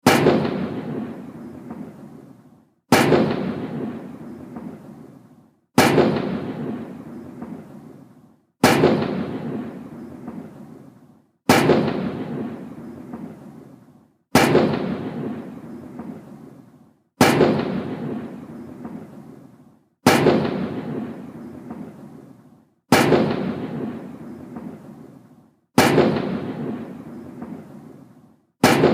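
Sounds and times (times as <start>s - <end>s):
salute guns booming: 0.0s - 2.2s, 2.9s - 7.9s, 8.6s - 10.8s, 11.4s - 13.5s, 14.3s - 16.4s, 17.2s - 19.2s, 20.0s - 22.1s, 22.9s - 25.0s, 25.8s - 28.0s, 28.6s - 28.9s
rolling echo: 0.0s - 28.9s.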